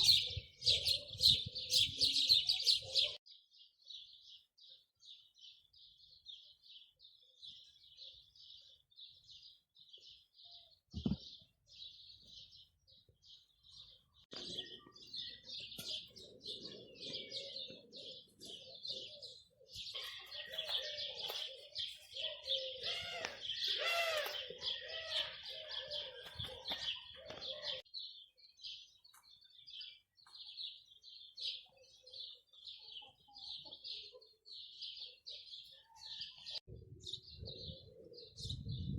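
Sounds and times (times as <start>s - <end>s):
birds chirping: 0.0s - 38.9s
bird calls rising and falling: 14.3s - 27.8s.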